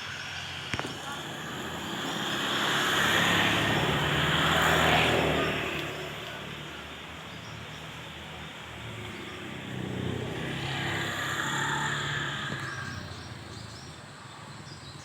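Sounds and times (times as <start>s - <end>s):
vehicle engine passing by: 0.2s - 14.1s.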